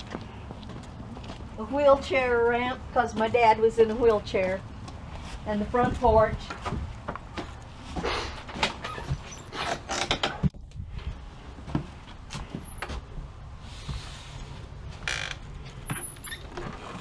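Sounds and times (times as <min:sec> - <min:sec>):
footsteps: 0:00.0 - 0:09.3
door squeaking: 0:08.6 - 0:10.4, 0:15.1 - 0:17.0.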